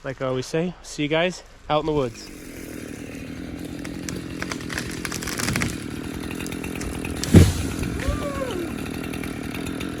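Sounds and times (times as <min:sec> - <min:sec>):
chainsaw engine idling: 0:01.9 - 0:10.0
loud thump: 0:07.2 - 0:08.0.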